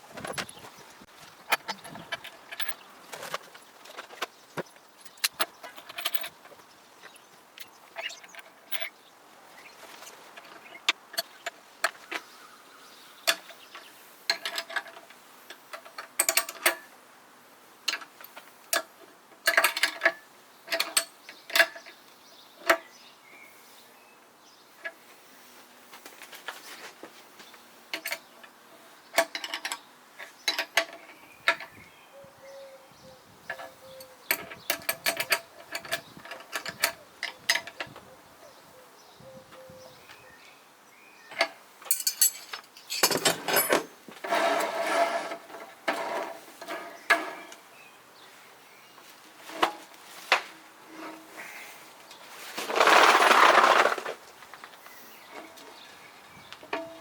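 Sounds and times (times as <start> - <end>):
metal tools clinking: 1.5 - 4.3, 5.0 - 9.0, 33.5 - 37.9, 41.3 - 47.6.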